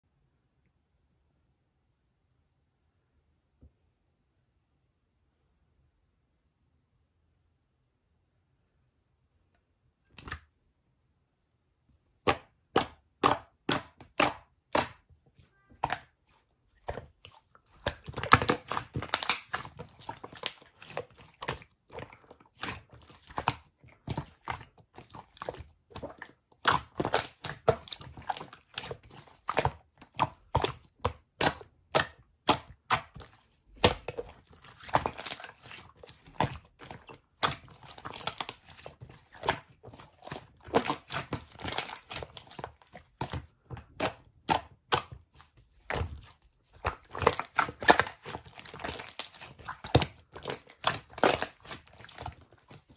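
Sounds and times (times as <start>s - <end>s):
slime popping and clicking: 12.3s - 15.0s.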